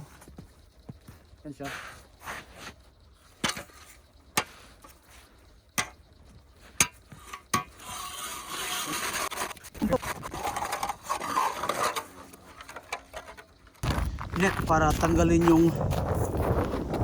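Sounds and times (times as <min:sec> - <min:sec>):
sharp knocks: 0:05.7 - 0:06.0
ice auger grinding into ice: 0:07.7 - 0:13.4.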